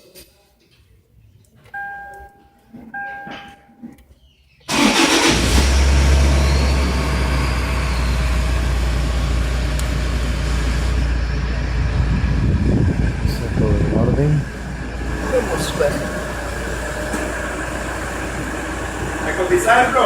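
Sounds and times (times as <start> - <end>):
engine cranking: 4.7 - 7.9
diesel engine idling: 4.7 - 20.0.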